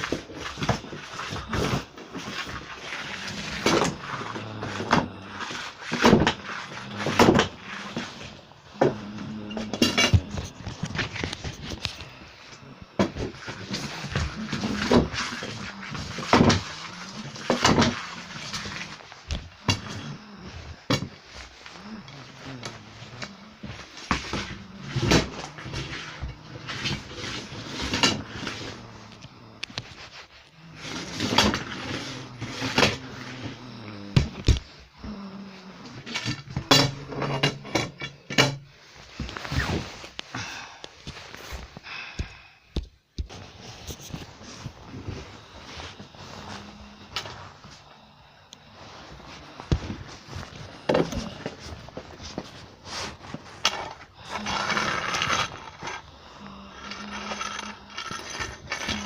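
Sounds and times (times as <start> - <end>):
hard objects clattering: 0.0 - 20.3, 49.7 - 59.0
rattling and scraping: 0.0 - 33.6, 48.8 - 59.0
faint low hum: 0.0 - 59.0.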